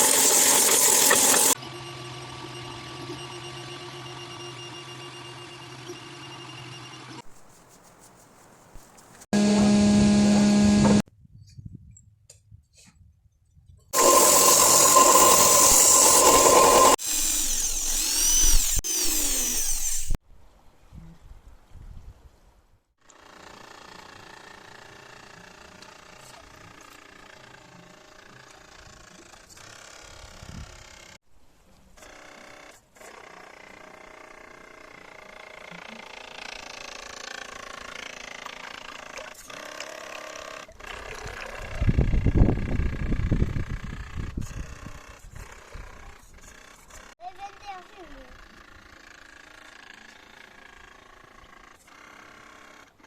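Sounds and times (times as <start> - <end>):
small electric motor whining: 0.0 - 7.2, 9.4 - 11.0, 14.0 - 20.2.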